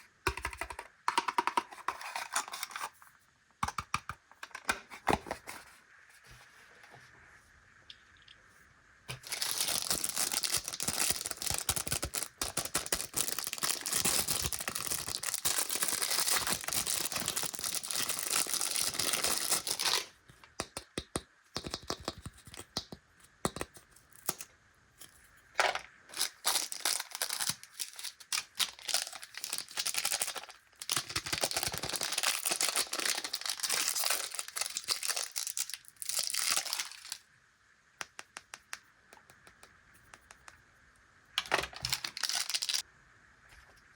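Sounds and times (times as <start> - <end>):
plastic packaging crinkling: 9.1 - 20.2, 25.6 - 37.2, 41.4 - 42.8.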